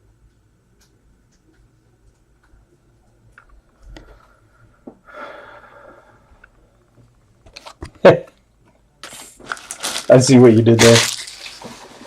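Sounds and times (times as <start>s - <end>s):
trading cards clicking and rustling: 9.0s - 11.8s.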